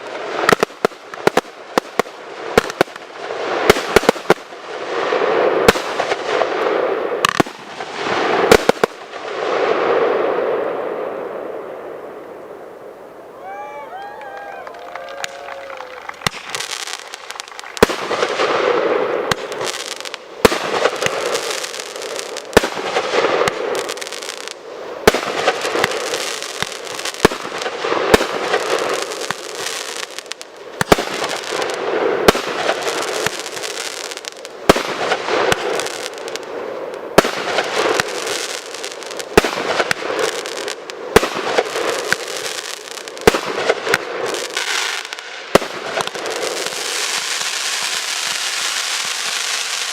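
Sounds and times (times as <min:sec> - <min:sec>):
continuous fireworks noise: 0:00.0 - 0:12.0, 0:14.0 - 0:49.9
fireworks bangs: 0:00.0 - 0:12.2, 0:13.6 - 0:49.9.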